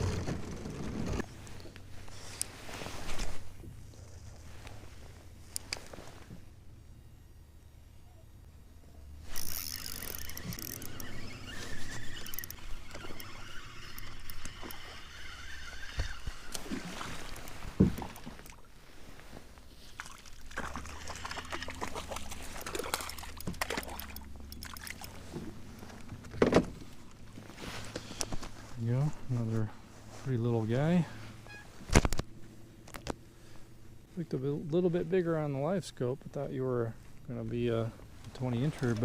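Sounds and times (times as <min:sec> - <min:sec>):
water splashing against kayak: 0:09.4 - 0:18.8, 0:19.7 - 0:26.0.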